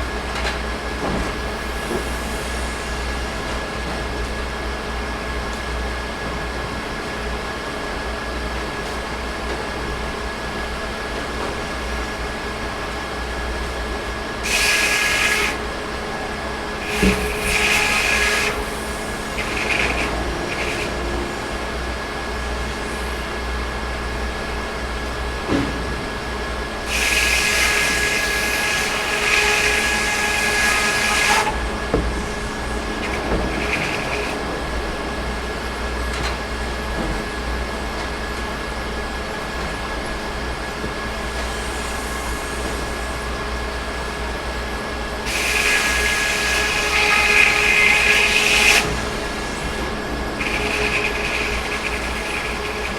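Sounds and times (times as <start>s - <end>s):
sawmill engine drone: 0.0s - 52.9s
saw hissing through wood: 14.4s - 15.7s, 16.8s - 23.5s, 26.8s - 34.4s, 41.3s - 43.5s, 45.2s - 49.8s, 50.4s - 52.9s.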